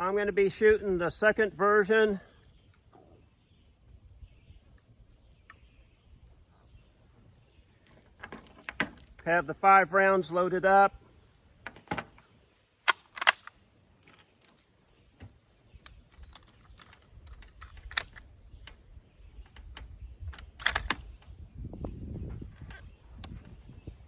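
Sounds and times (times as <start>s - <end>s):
metallic clicks and rattles of rifle: 11.6s - 14.8s, 15.8s - 21.3s.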